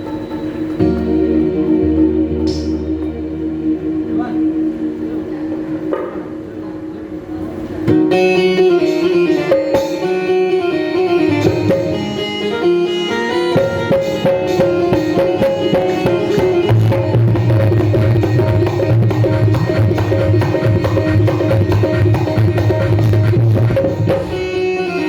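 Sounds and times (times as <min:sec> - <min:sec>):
tabla-like percussion: 0:00.0 - 0:03.7, 0:05.8 - 0:06.6, 0:07.7 - 0:25.0
plucked-string melody: 0:00.0 - 0:25.0
low bass line: 0:00.8 - 0:08.0.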